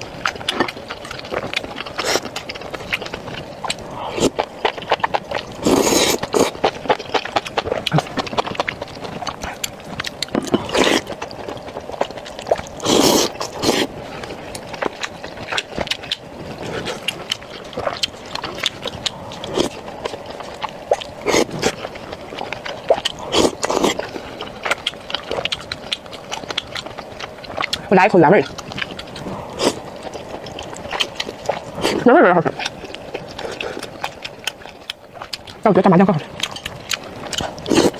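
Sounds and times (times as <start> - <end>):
wet chewing: 0.0 - 37.9
mouth noises: 7.8 - 8.3.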